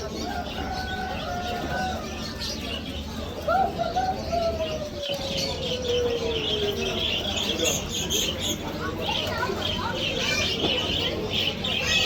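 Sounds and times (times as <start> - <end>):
pigeons cooing: 0.0 - 9.4
small birds chirping: 0.0 - 12.0.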